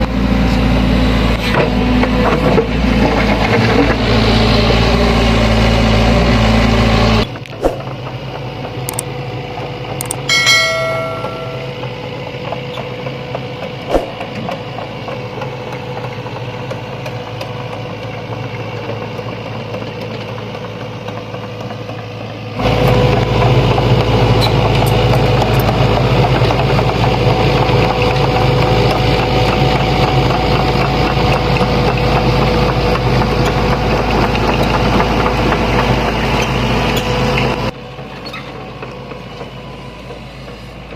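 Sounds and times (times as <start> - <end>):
excavator diesel engine running: 0.0 - 40.9
bell-like metallic ring: 10.2 - 12.0.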